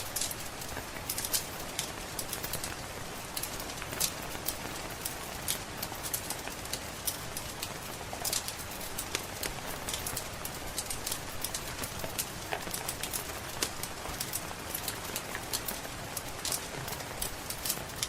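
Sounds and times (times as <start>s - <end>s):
wood fire crackling and popping: 0.0s - 18.0s.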